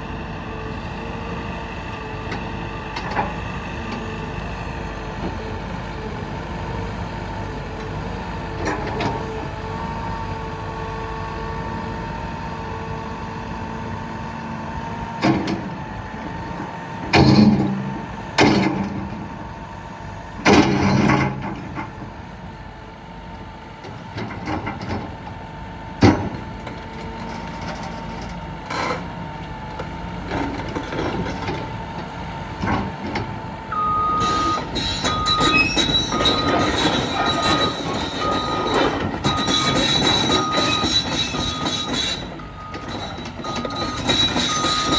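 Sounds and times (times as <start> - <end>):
excavator diesel engine running: 0.0 - 44.9
hydraulic surges: 33.7 - 44.9
steel tracks clattering and squealing: 33.8 - 44.9.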